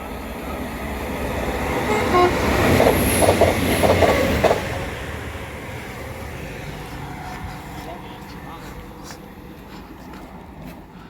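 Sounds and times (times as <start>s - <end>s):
train rumble: 0.0s - 11.0s
train wheels clattering knocks: 1.8s - 5.0s.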